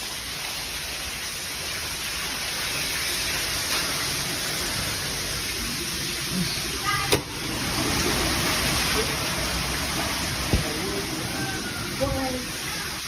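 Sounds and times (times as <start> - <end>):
water gushing from burst pipe: 0.0 - 13.0.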